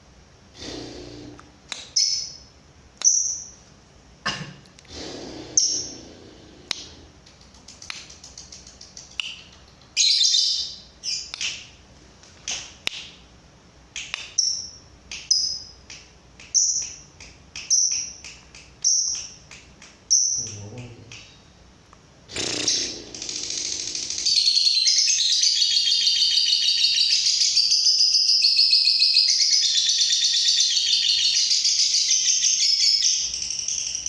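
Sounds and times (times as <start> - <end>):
bird high chirps: 1.8 - 2.4, 3.0 - 3.6, 8.3 - 11.7, 16.5 - 17.0, 18.8 - 19.4, 22.6 - 34.0.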